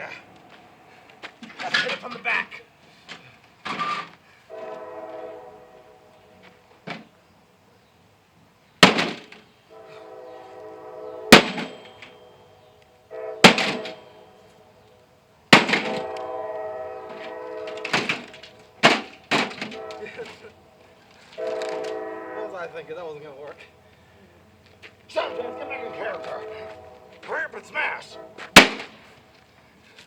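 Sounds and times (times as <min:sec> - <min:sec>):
heavy blows on metal case: 0:08.8 - 0:09.4, 0:11.3 - 0:12.1, 0:13.4 - 0:14.1, 0:15.5 - 0:16.2, 0:17.0 - 0:20.0, 0:28.5 - 0:29.1
metal case ringing: 0:11.4 - 0:12.2, 0:13.5 - 0:14.1.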